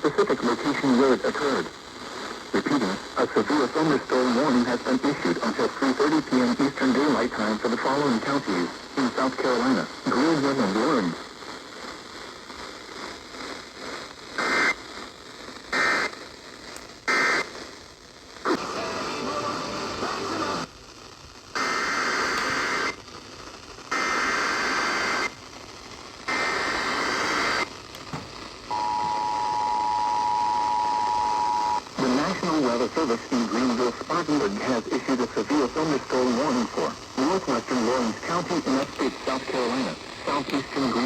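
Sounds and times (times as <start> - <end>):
radio static hiss: 0.0 - 41.0
two-tone attention signal: 28.7 - 31.8
emergency alert data bursts: 28.7 - 32.3.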